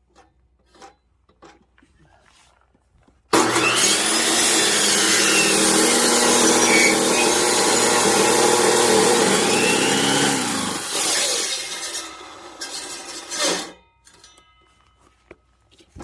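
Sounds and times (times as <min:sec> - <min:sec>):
chainsaw cutting through log: 0:03.4 - 0:13.7.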